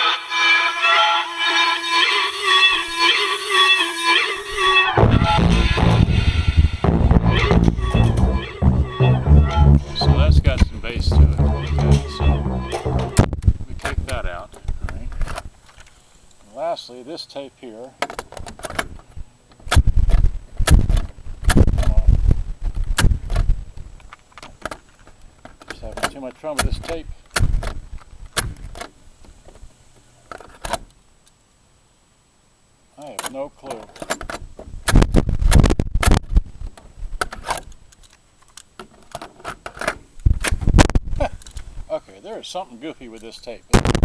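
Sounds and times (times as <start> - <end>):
heavy thumps: 5.0 - 13.5
cassette loading thumps and clunks: 28.4 - 29.0.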